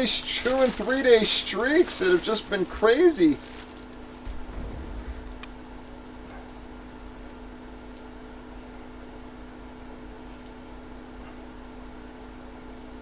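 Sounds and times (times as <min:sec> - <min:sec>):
low electrical hum: 0:00.0 - 0:13.0
faint clicks: 0:10.3 - 0:10.6.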